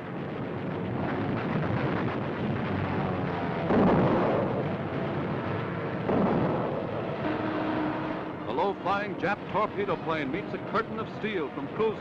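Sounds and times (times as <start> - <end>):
steady rumble: 0.0 - 12.0
heavy gun blasts: 6.0 - 7.2.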